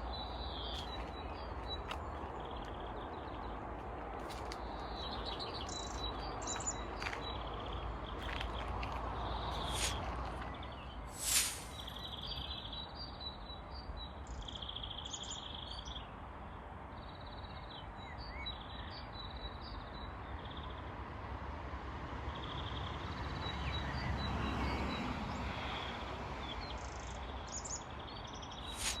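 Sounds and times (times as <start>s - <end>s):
forest birds calling: 0.0s - 13.4s, 26.6s - 29.0s
brief sharp sound: 11.2s - 12.0s.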